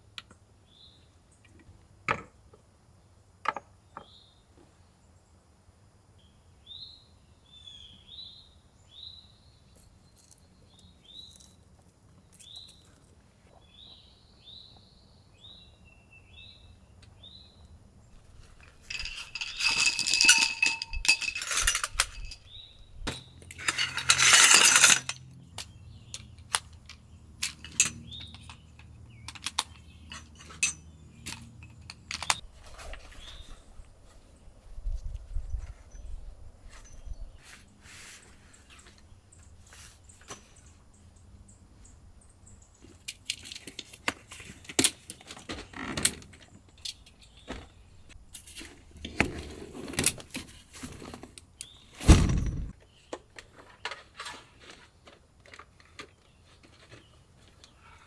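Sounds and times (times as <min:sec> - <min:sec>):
metal cookware clinking and clattering: 0:18.9 - 0:22.5, 0:23.6 - 0:25.2, 0:30.1 - 0:30.9.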